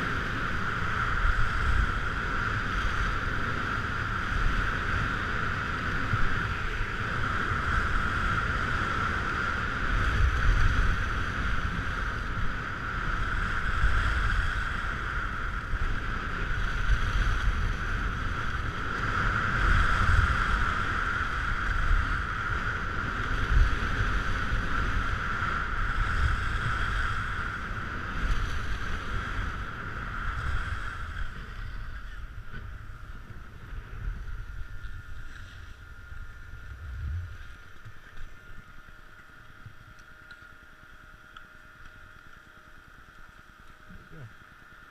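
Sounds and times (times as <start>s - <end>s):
wind buffeting microphone: 0.0s - 39.9s
skis sliding on snow: 25.9s - 39.0s.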